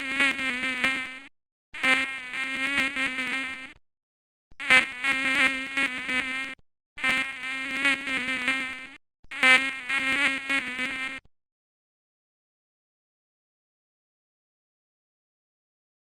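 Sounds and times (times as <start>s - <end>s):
mosquito whine: 0.0s - 1.2s, 1.8s - 3.8s, 4.6s - 11.2s.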